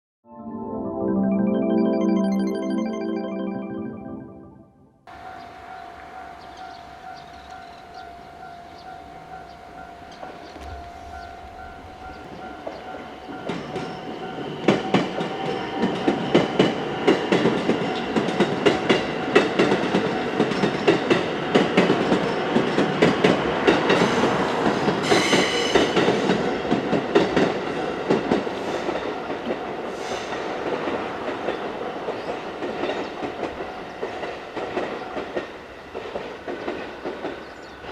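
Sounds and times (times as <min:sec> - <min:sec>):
level crossing warning bell: 0:05.1 - 0:24.4
train wheels clacking: 0:05.1 - 0:37.9.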